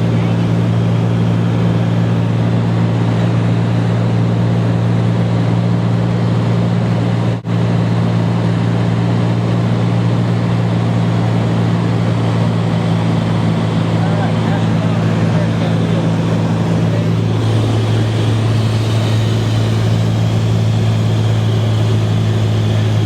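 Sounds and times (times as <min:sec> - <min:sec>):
airplane engine droning in cabin: 0:00.0 - 0:23.0.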